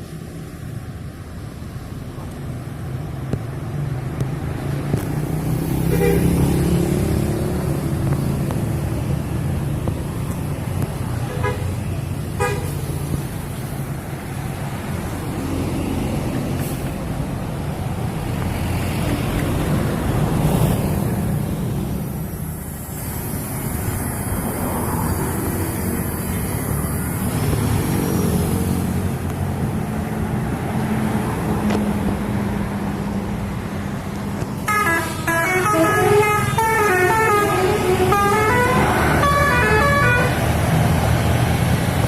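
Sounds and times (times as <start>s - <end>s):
bus engines rumbling: 0.0s - 42.0s
multi-tone bus horns: 5.8s - 6.6s, 11.2s - 11.8s, 12.4s - 12.9s, 34.6s - 40.5s.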